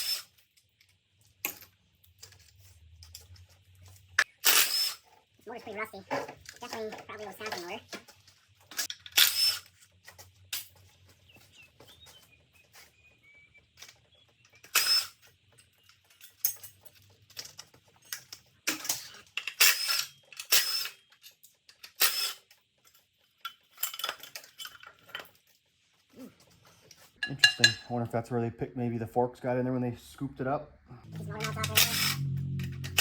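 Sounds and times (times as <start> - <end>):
metal tools clinking and clanking: 14.6 - 25.6, 27.2 - 27.9, 31.1 - 33.0.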